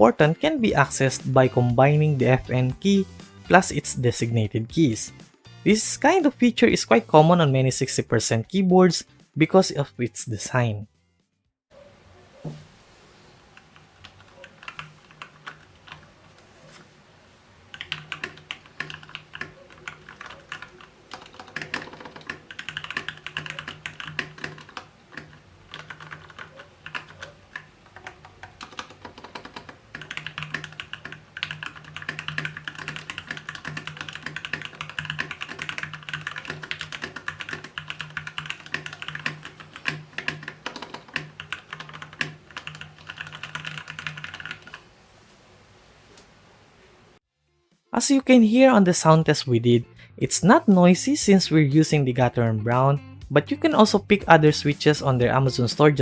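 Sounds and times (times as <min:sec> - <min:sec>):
mechanical keyboard typing: 0:13.6 - 0:16.1, 0:17.7 - 0:44.8.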